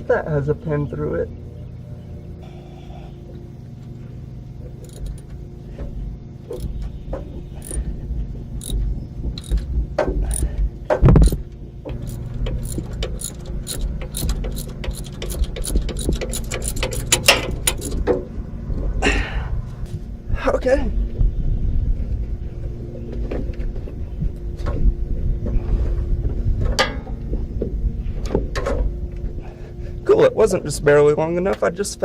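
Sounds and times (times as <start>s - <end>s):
low steady hum: 0.0s - 32.0s
ratchet wrench clicking: 4.8s - 5.2s, 6.5s - 6.7s, 7.6s - 7.8s, 8.6s - 8.8s, 9.4s - 9.6s, 11.2s - 18.0s.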